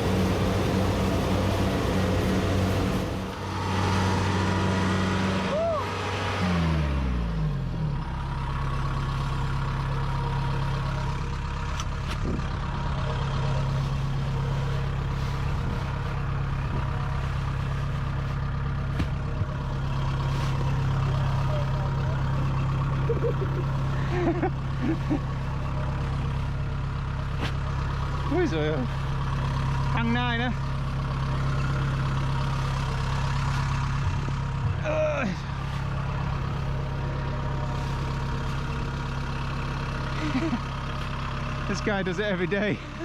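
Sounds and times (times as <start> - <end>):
harvester engine idling: 0.0 - 43.0.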